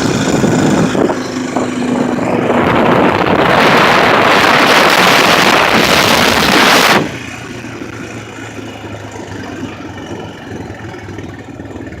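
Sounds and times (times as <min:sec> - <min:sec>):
wind rushing on microphone: 0:00.0 - 0:07.2
atv engine idling: 0:07.1 - 0:12.0.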